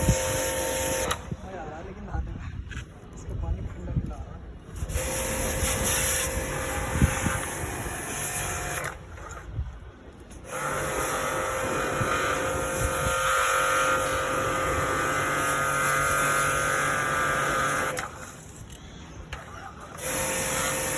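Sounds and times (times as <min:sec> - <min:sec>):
small electric motor whining: 0:10.4 - 0:18.3, 0:20.0 - 0:20.9.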